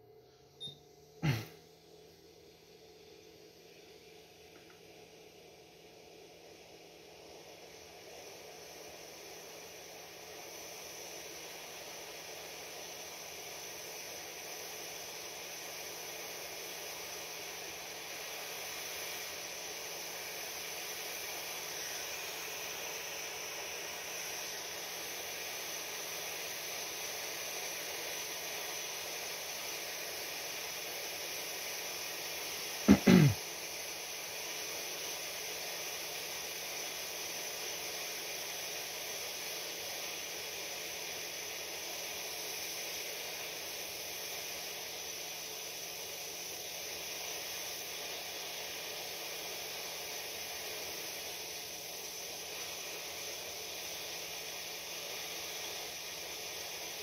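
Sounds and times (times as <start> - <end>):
hot air gun hissing: 1.2 - 1.5, 2.2 - 57.0.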